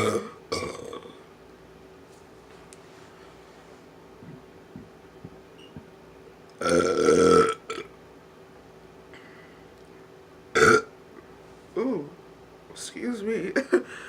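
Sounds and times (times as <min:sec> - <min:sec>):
person belching: 0:00.0 - 0:01.2, 0:06.6 - 0:07.9, 0:10.5 - 0:10.9.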